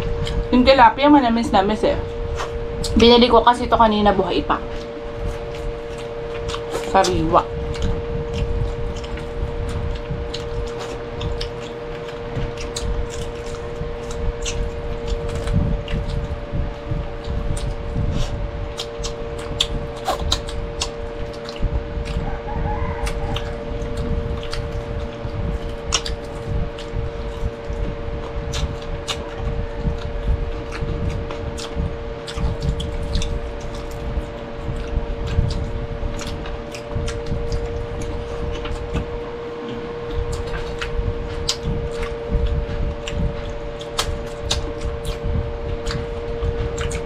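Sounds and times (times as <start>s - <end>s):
people chewing with wet smacking: 0.0s - 47.0s
steady hum: 0.0s - 47.0s
sharp mouth clicks: 23.0s - 39.1s, 40.2s - 46.1s.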